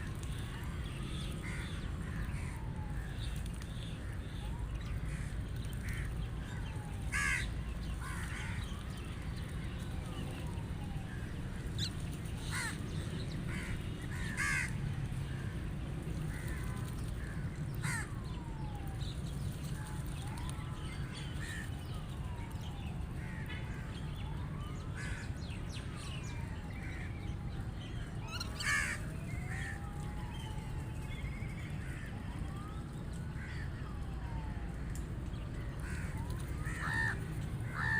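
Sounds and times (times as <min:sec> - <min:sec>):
rooks cawing: 0:01.1 - 0:03.2, 0:05.1 - 0:08.8, 0:11.1 - 0:15.6, 0:16.3 - 0:18.3, 0:23.2 - 0:23.9, 0:28.3 - 0:29.9, 0:33.4 - 0:33.9, 0:35.8 - 0:37.9.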